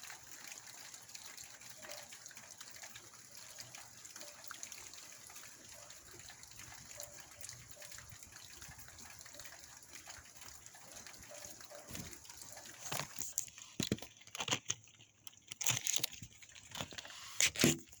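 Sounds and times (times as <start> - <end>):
rain: 0.0 - 13.9
wind: 0.0 - 17.9.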